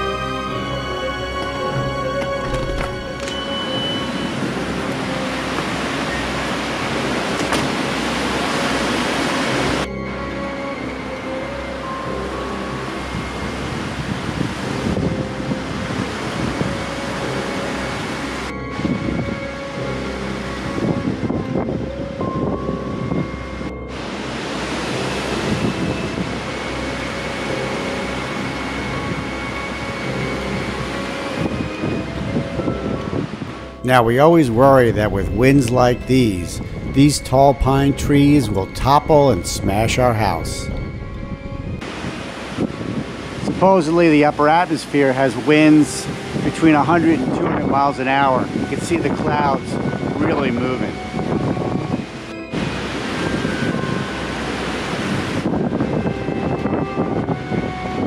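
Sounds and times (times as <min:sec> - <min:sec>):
background music: 0:00.0 - 0:58.0
gusty wind on microphone: 0:11.8 - 0:58.0.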